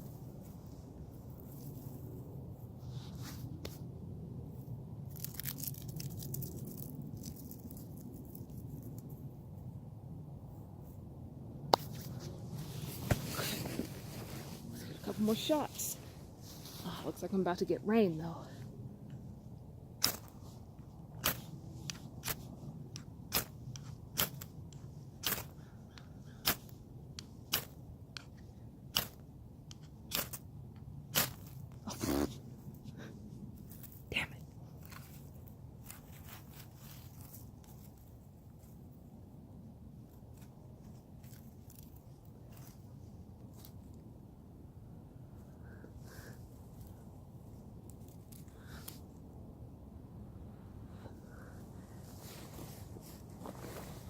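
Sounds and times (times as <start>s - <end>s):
low background rumble: 0.0s - 54.0s
small crackles: 5.0s - 9.3s
light rustling: 11.8s - 17.3s, 52.0s - 54.0s.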